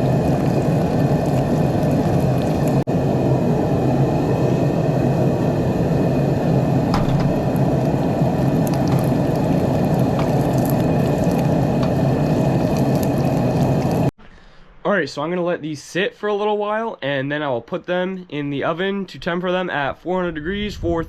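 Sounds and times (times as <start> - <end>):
forge roaring: 0.0 - 14.1.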